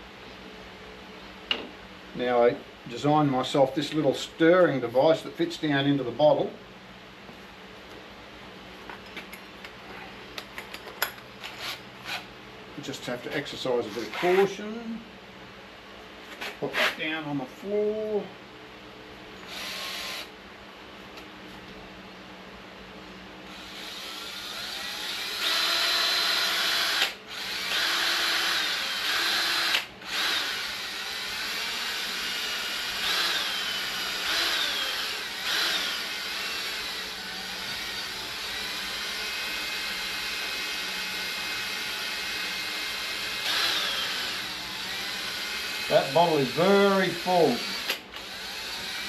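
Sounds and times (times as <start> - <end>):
power drill mixing paint: 19.5 - 20.3, 23.5 - 49.0.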